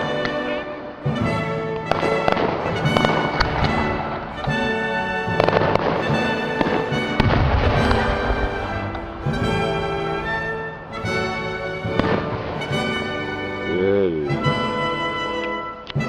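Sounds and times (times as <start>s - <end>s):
fireworks bangs: 0.0s - 13.7s
loud music: 0.0s - 15.0s
deep firework boom: 1.9s - 13.0s.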